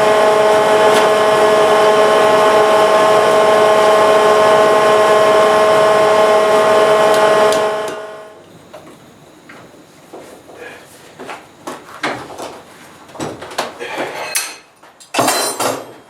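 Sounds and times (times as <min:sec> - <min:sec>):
electric motor whining: 0:00.0 - 0:08.4.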